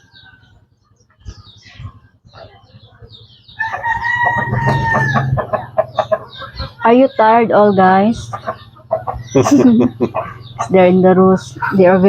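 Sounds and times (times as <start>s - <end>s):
chickens clucking softly: 0.0s - 12.0s
rooster crowing: 3.6s - 6.1s.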